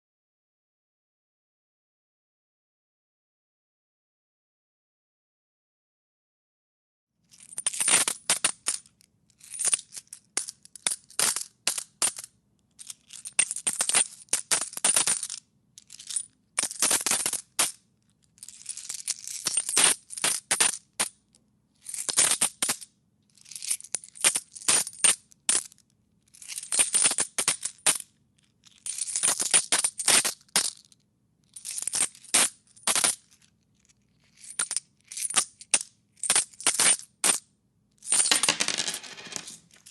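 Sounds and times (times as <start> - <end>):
coins clinking in a hand: 7.4 - 21.2, 21.8 - 37.4, 38.0 - 39.9.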